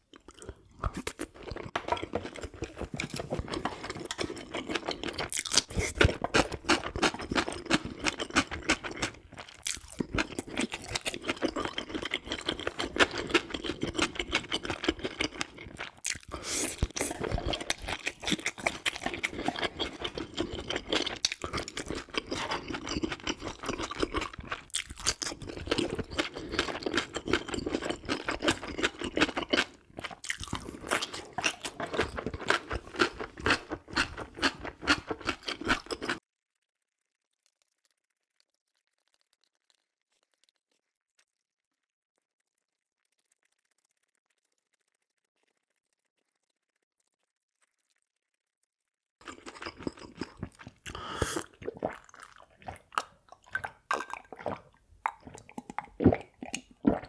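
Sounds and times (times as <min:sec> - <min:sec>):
wet chewing and crunching: 0:00.0 - 0:36.2, 0:49.2 - 0:57.0.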